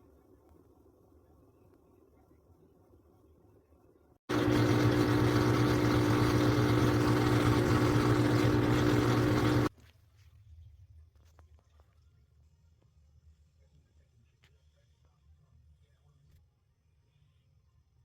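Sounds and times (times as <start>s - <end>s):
electric motor hum: 4.3s - 9.7s.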